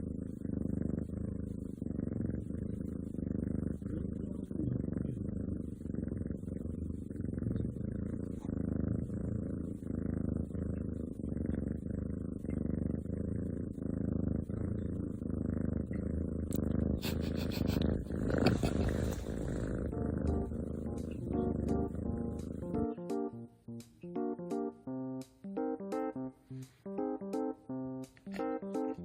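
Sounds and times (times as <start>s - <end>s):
cat purring: 0.0s - 29.0s.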